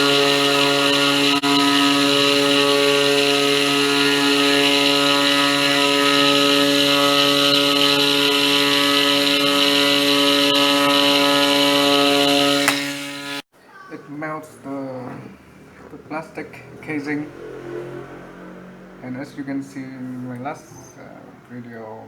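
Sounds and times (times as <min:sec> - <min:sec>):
spindle motor whine: 0:00.0 - 0:13.5.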